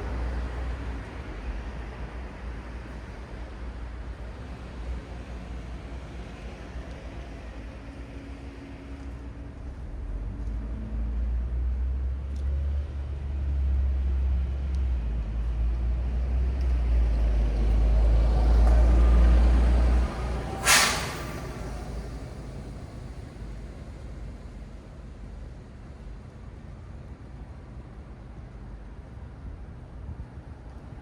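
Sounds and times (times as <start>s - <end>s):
diesel engine rumble: 0.0s - 30.8s
air brakes hissing: 19.6s - 23.6s.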